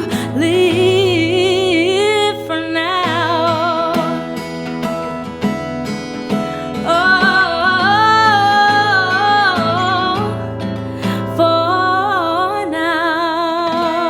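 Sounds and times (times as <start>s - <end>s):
woman singing long note with vibrato: 0.0s - 4.2s, 6.8s - 10.4s
guitar picking: 0.0s - 14.0s.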